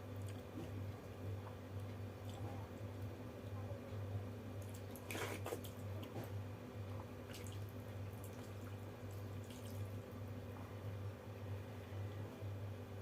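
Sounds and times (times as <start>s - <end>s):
steady low hum: 0.0s - 13.0s
small drips and clicks: 0.1s - 0.8s, 6.9s - 10.0s
wet squelching splash: 7.3s - 10.0s.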